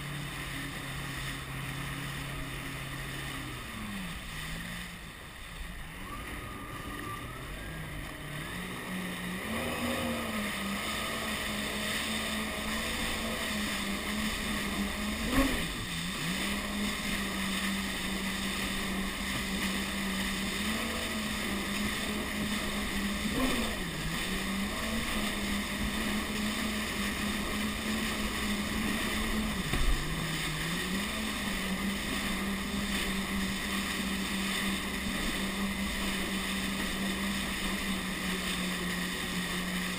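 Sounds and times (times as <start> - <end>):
jet ski engine running: 0.0 - 39.9
water and wind hiss: 0.0 - 39.9
sharp thump: 29.6 - 30.0.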